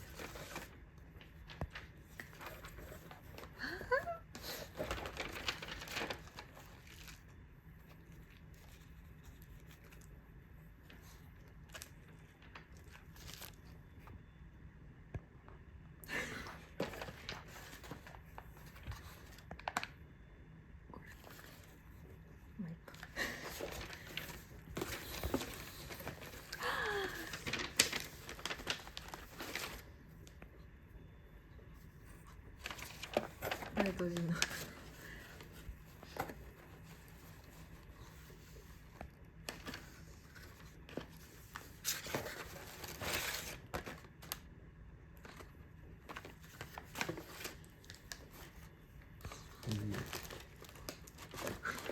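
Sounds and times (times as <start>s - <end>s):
packaging crinkling: 0.0s - 7.4s, 22.9s - 30.4s, 32.6s - 38.4s, 49.4s - 51.9s.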